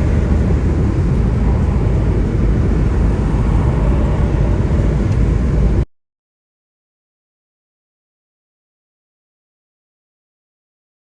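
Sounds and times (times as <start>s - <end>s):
car engine: 0.0s - 5.9s
road and wind noise in car: 0.0s - 5.9s.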